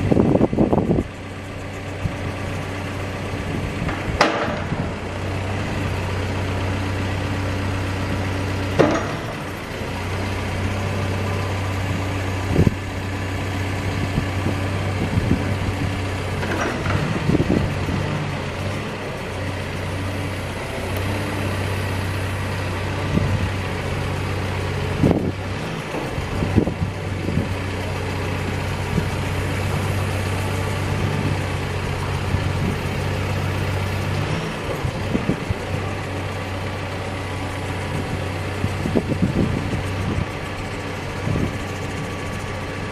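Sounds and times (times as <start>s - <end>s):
diesel engine running: 0.0s - 42.9s
hydraulic attachment clunks: 3.7s - 7.0s, 8.0s - 13.3s, 13.9s - 18.8s.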